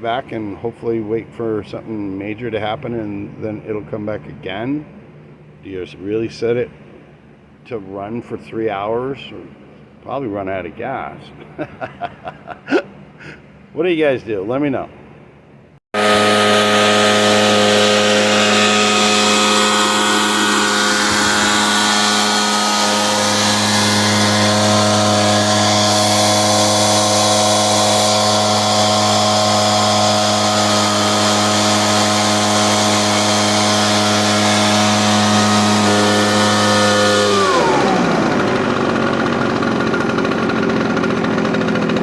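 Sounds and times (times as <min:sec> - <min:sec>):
leaf blower engine running: 0:16.0 - 0:42.0.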